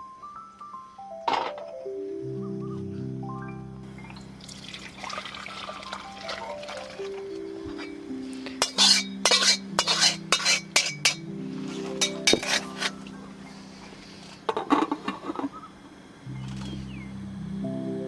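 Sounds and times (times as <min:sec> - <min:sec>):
dishes and utensils clinking: 0:01.3 - 0:01.8, 0:07.7 - 0:13.0, 0:14.5 - 0:15.6.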